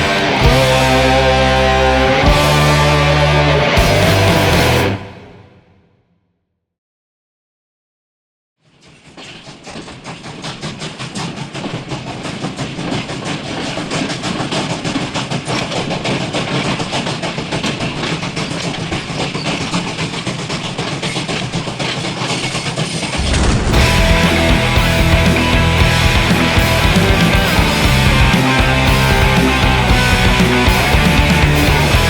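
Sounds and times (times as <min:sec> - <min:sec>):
train clickety-clack on rails: 0:08.8 - 0:32.0.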